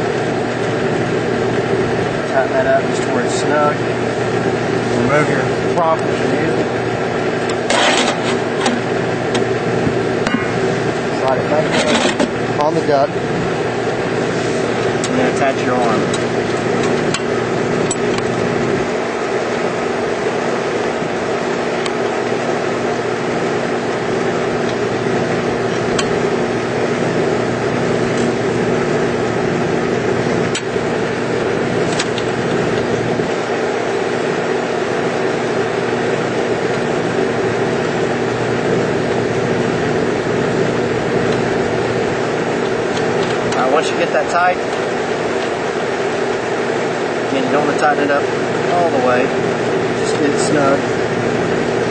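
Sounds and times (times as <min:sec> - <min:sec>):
machinery droning: 0:00.0 - 0:51.9.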